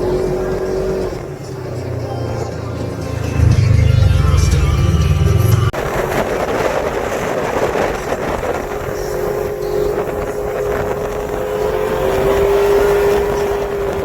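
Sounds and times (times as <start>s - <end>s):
side-by-side engine running: 0.0s - 14.0s
wind noise on microphone: 2.9s - 14.0s.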